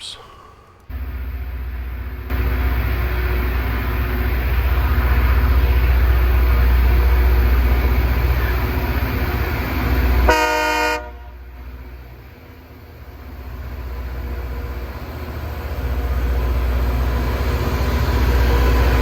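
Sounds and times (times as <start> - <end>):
rail grinder grinding: 0.9 - 19.0
multi-tone horn blast: 10.0 - 11.6.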